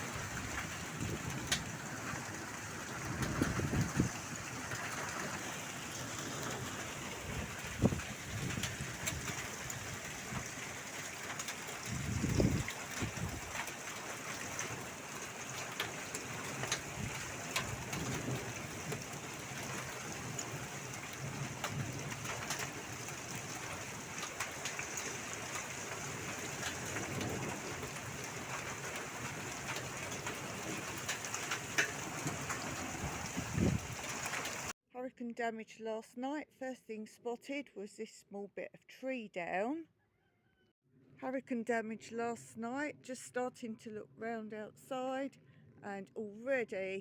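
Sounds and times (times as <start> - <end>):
steady rain falling: 0.0 - 34.8.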